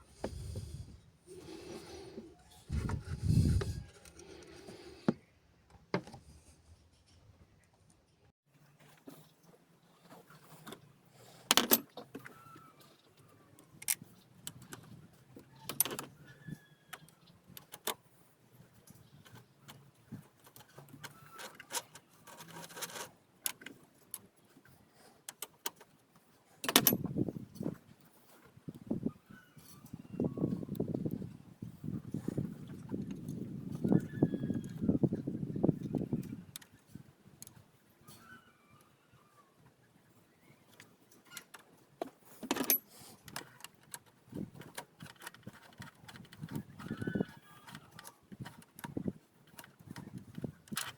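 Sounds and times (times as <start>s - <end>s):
hand tools and metal parts clinking: 8.8s - 28.6s, 40.7s - 50.9s.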